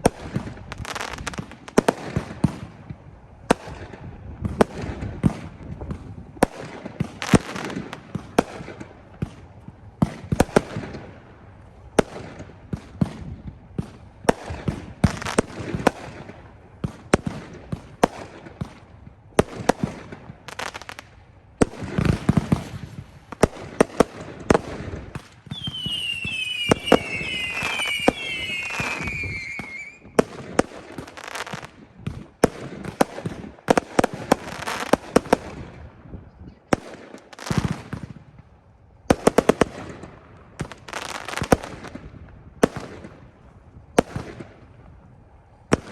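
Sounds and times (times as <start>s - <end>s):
firework crackling: 0.0s - 35.8s
firework bangs: 12.0s - 35.8s
falling firework whistles: 25.4s - 30.3s.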